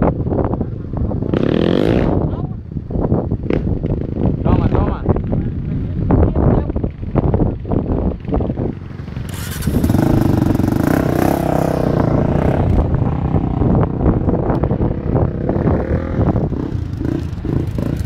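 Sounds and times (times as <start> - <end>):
atv engine revving hard: 1.3 - 2.2, 8.8 - 13.8, 14.8 - 18.0.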